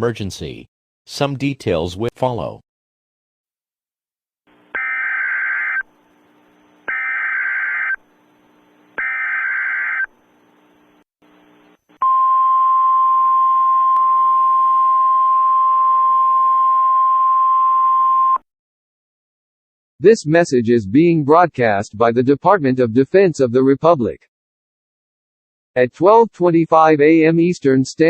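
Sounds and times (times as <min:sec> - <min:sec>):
harsh digital header bursts: 0:06.9 - 0:08.0.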